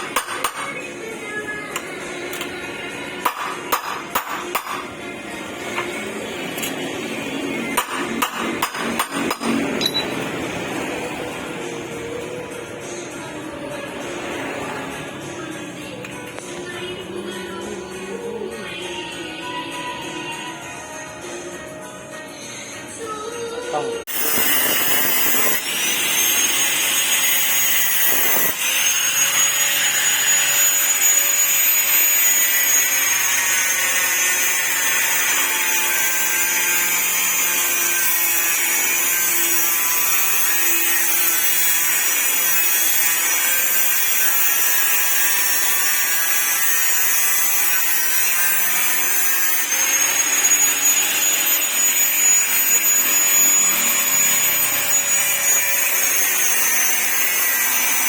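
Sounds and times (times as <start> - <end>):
power tool whining: 23.7 - 58.0.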